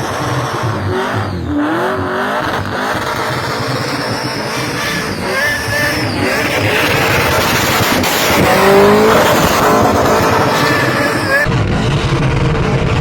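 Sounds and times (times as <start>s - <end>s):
car engine at high revs: 0.0s - 13.0s
tyres spinning and squealing: 2.4s - 11.6s.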